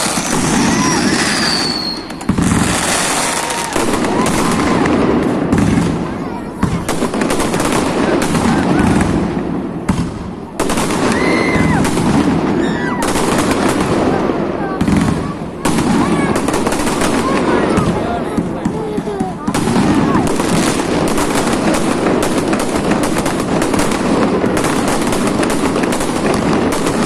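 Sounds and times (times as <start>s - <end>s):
whistling firework shells: 0.0s - 5.0s
fireworks bangs and crackling: 0.0s - 27.0s.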